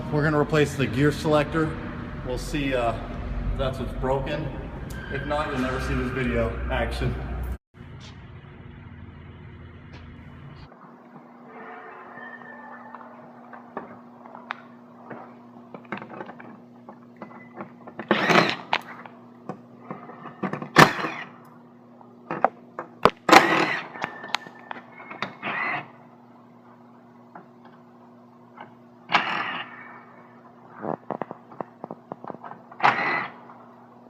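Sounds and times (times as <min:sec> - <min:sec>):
steady low hum: 0:00.0 - 0:34.0.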